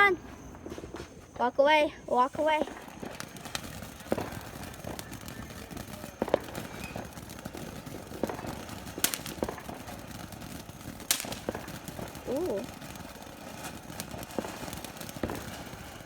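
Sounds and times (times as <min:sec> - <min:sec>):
fireworks popping and cracking: 0:00.0 - 0:16.0
steady low hiss: 0:11.0 - 0:12.6.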